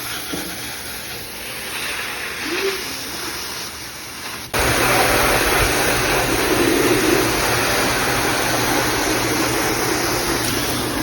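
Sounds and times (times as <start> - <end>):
motor-driven machine running: 4.6 - 11.0.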